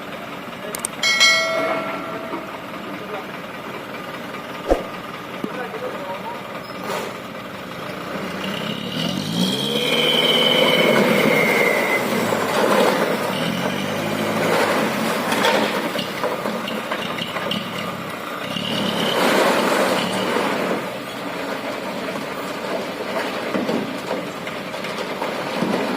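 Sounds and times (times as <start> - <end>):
diesel truck engine revving: 6.9 - 21.9
high squeals: 9.5 - 14.2.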